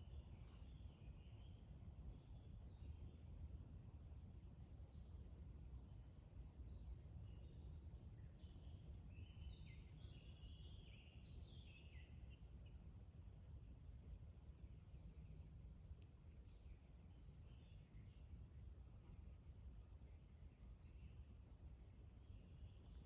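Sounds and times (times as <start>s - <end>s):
small birds chirping: 4.9s - 13.0s, 14.8s - 19.2s, 22.1s - 23.0s.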